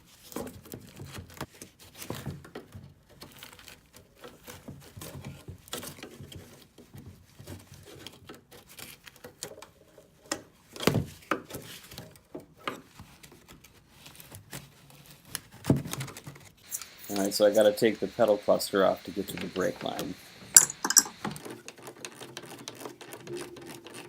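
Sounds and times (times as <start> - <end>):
metallic knocks: 20.5 - 21.2.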